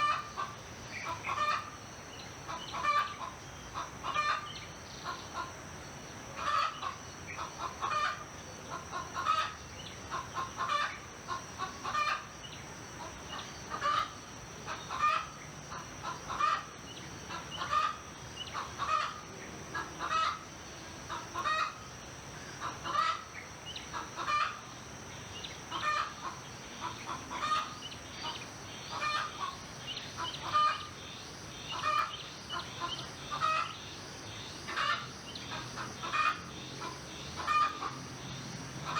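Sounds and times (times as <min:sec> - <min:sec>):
chickens clucking: 0:00.0 - 0:01.7, 0:02.5 - 0:04.5, 0:13.0 - 0:14.1, 0:14.7 - 0:20.4, 0:21.1 - 0:21.8, 0:22.6 - 0:23.3, 0:23.9 - 0:24.6, 0:25.7 - 0:29.6, 0:30.2 - 0:30.9, 0:31.7 - 0:33.8, 0:34.7 - 0:38.0.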